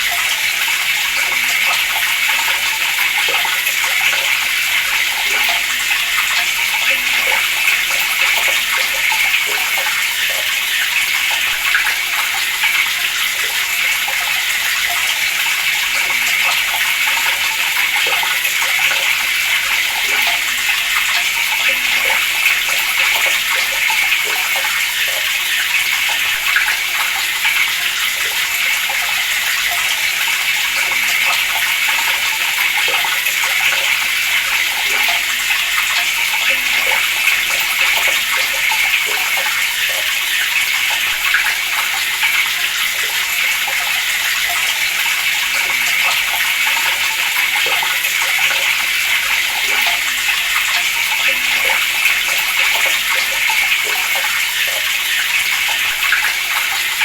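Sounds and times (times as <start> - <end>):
water running from a tap: 0.0 - 57.0.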